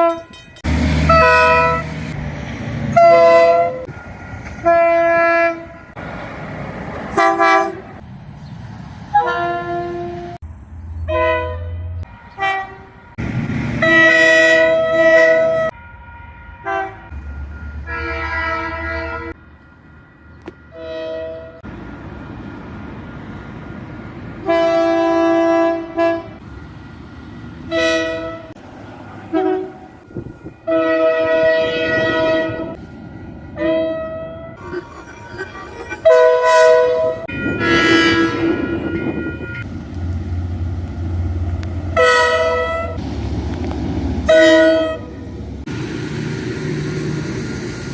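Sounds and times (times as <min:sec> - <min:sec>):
train horn blasts: 0:00.0 - 0:02.0, 0:02.9 - 0:03.9, 0:04.6 - 0:06.0, 0:07.1 - 0:08.0, 0:09.1 - 0:10.4, 0:11.0 - 0:13.2, 0:13.8 - 0:19.4, 0:20.4 - 0:21.7, 0:24.4 - 0:26.4, 0:27.7 - 0:28.6, 0:29.2 - 0:32.8, 0:33.6 - 0:34.6, 0:36.0 - 0:39.7, 0:41.9 - 0:43.0, 0:44.2 - 0:45.2.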